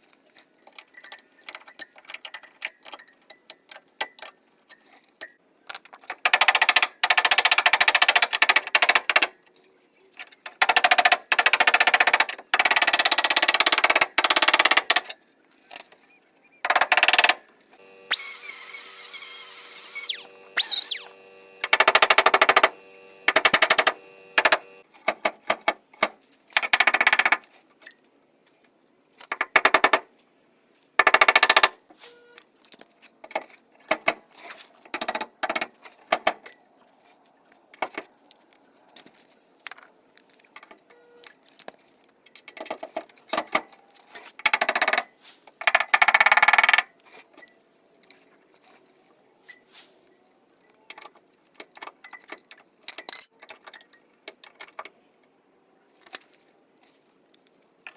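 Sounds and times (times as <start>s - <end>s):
power tool rattling on sheet metal: 6.2s - 9.3s, 10.6s - 15.1s, 16.7s - 24.8s.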